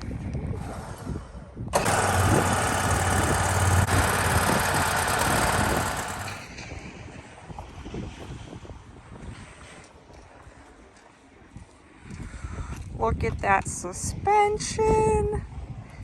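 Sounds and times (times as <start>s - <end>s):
engine starting and running: 1.7s - 6.7s.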